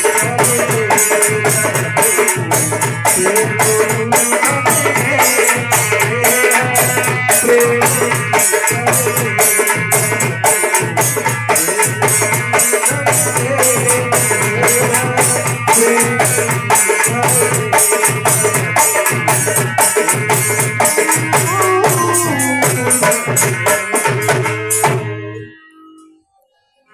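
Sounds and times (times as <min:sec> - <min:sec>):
dholak drumming: 0:00.0 - 0:25.5
wavering melodic line: 0:21.0 - 0:24.2.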